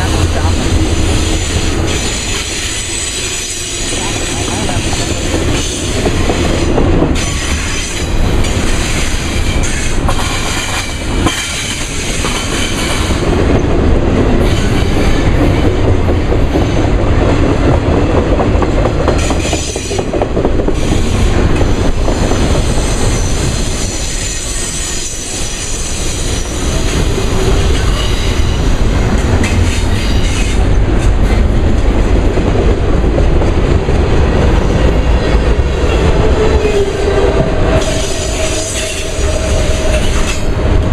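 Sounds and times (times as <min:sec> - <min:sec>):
steel wheels rumbling on rail: 0:00.0 - 0:40.9
clacks over rail joints: 0:03.9 - 0:13.7, 0:14.4 - 0:22.7.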